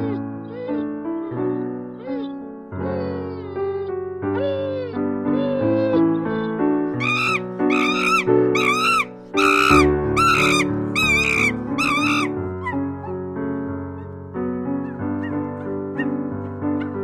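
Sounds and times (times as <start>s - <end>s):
music with sustained notes: 0.0s - 17.0s
animal giving short high calls: 7.0s - 12.8s.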